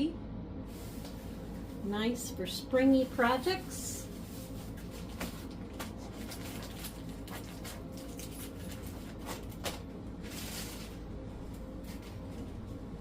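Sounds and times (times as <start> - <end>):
low steady hum: 0.0 - 13.0
fabric and packaging rustling: 3.0 - 12.8.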